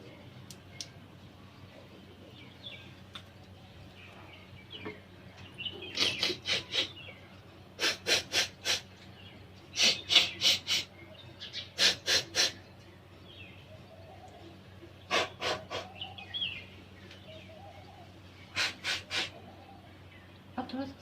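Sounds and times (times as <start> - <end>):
sharp breath blasts through nose: 18.5 - 19.4.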